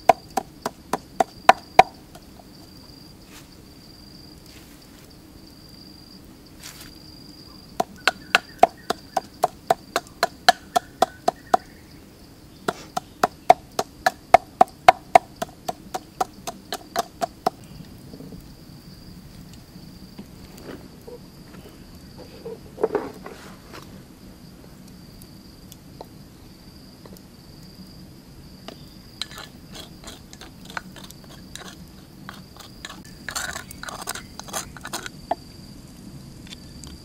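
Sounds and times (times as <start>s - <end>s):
knife chopping on wooden board: 7.8s - 11.7s, 12.7s - 17.6s.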